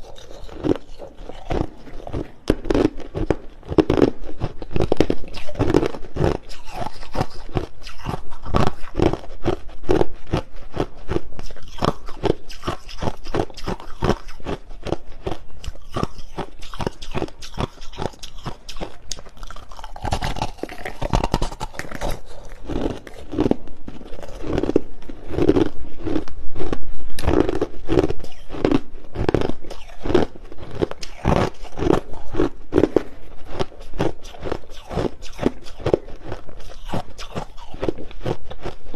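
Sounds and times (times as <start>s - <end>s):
person crunching ice: 0.0s - 38.9s.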